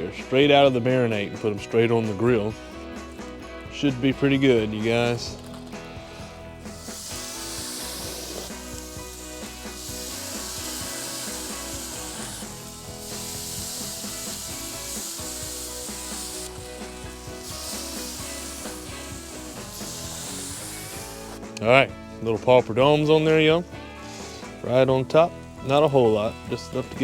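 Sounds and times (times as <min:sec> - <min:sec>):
background music: 0:00.0 - 0:27.0
fish sizzling on a grill: 0:05.3 - 0:21.4, 0:23.9 - 0:26.9.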